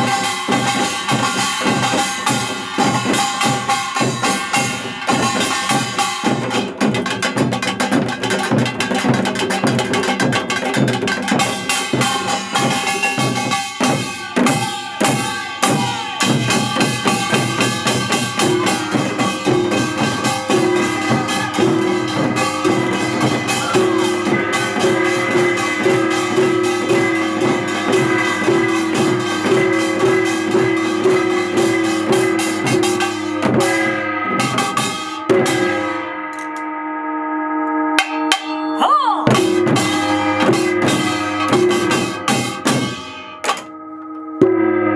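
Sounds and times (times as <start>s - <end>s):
steady drum beat: 0.0s - 36.1s, 38.0s - 43.7s
repeating melodic figure: 16.5s - 36.5s.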